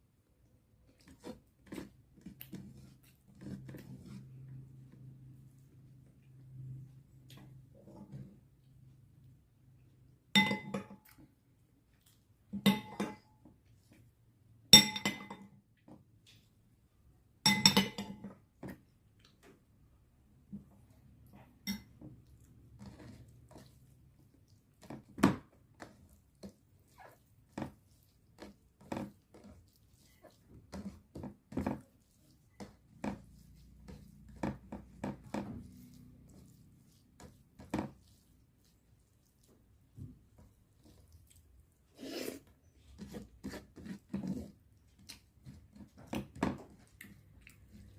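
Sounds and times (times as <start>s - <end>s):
utensil clinking on dish: 10.4s - 11.0s.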